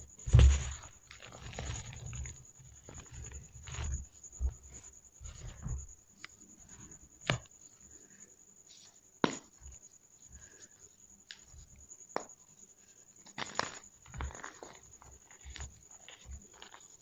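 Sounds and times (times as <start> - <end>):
chalk balls crunching: 13.3 - 17.0.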